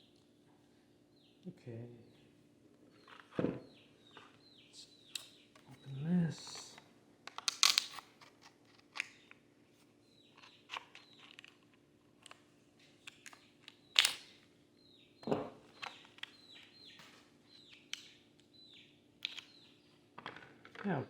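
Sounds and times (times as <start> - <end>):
package crinkling and clicking: 7.3 - 9.4, 10.4 - 14.3.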